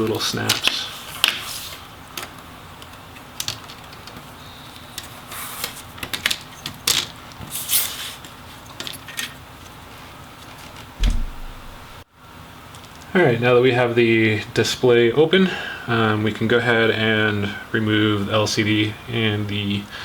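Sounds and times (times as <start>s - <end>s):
dull thud: 11.0s - 12.0s.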